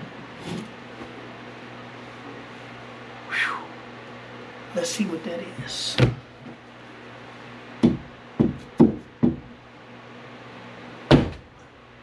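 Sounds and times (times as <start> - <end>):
sharp knocks: 7.8 - 9.5.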